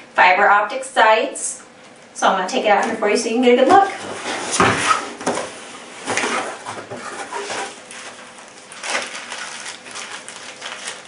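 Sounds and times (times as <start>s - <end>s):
handling bumps and scrapes: 3.7s - 8.2s
cardboard rustling and crinkling: 3.8s - 11.0s.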